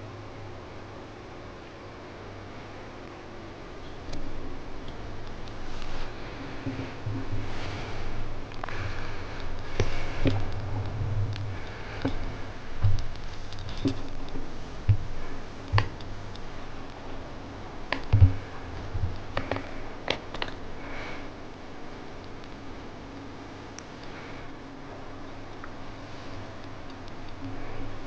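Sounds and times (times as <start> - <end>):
low rumble: 4.2 - 19.3
small clicks and taps: 8.5 - 17.0, 17.9 - 18.4, 19.0 - 20.6.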